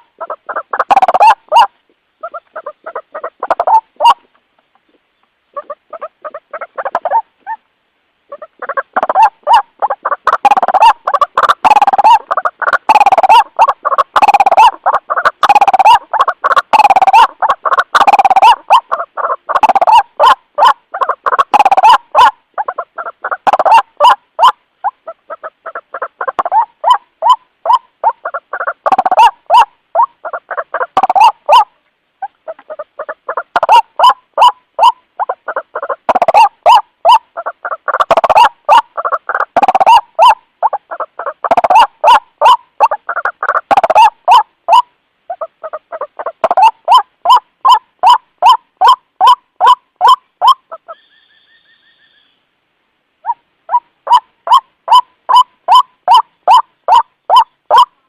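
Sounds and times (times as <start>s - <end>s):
bird calling harsh notes: 43.8s - 52.5s.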